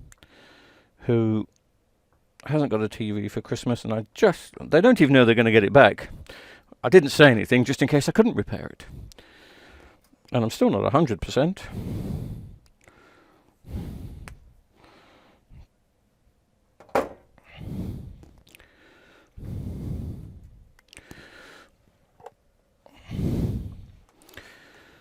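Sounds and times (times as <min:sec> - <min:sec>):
man exhaling heavily: 0:17.4 - 0:20.4, 0:22.9 - 0:25.0.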